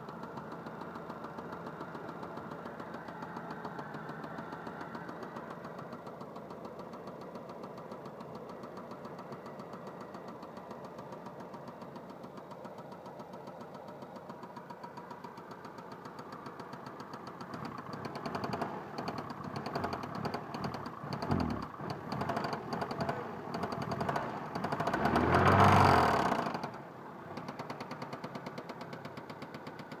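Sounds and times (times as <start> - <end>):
car engine idling with knock: 0.0 - 30.0
engine revving: 18.0 - 26.8.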